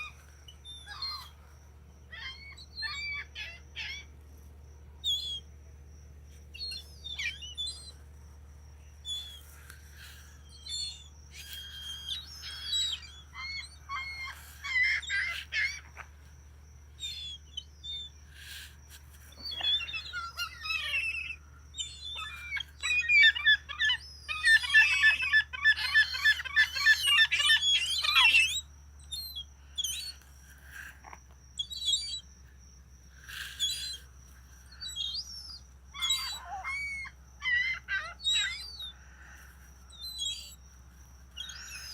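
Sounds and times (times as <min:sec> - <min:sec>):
seagulls calling: 0:00.0 - 0:01.4, 0:02.0 - 0:04.1, 0:06.6 - 0:08.0, 0:09.1 - 0:16.2, 0:17.0 - 0:30.9, 0:31.6 - 0:32.2, 0:33.2 - 0:34.1, 0:34.8 - 0:40.7, 0:41.3 - 0:41.9.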